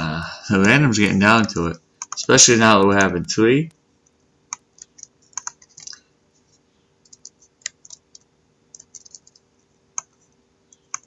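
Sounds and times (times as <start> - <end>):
typing on computer keyboard: 4.5 - 6.0, 7.0 - 9.4.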